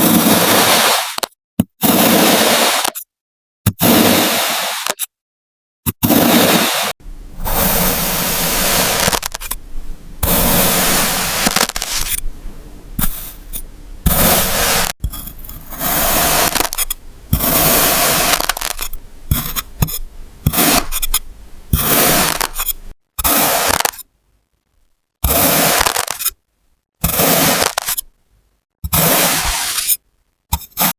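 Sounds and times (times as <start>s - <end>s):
blade slicing through sand: 0.0s - 3.0s, 3.8s - 5.1s, 6.0s - 9.6s, 10.2s - 12.2s, 13.0s - 13.5s, 14.1s - 15.0s, 15.6s - 19.9s, 20.5s - 21.1s, 21.7s - 24.0s, 25.2s - 26.4s, 27.0s - 28.1s, 28.8s - 30.0s, 30.6s - 30.9s.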